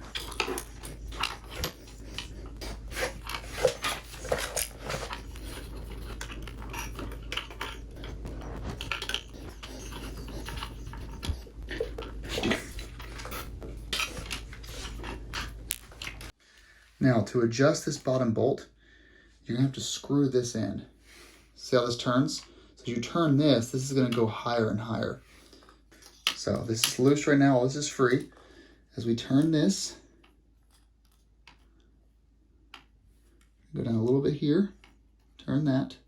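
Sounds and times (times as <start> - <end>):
metal tools clinking: 0.0 - 8.1
steady low hum: 0.0 - 30.5.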